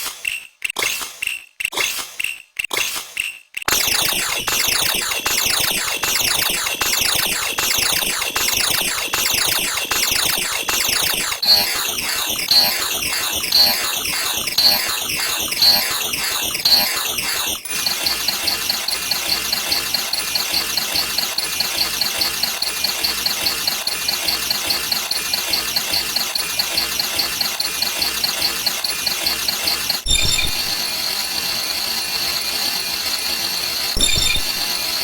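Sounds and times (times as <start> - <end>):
rapid mechanical clicks: 0.0 - 35.0
high pulsing beep: 3.7 - 30.8, 34.0 - 34.7
steady high tone: 11.3 - 17.2.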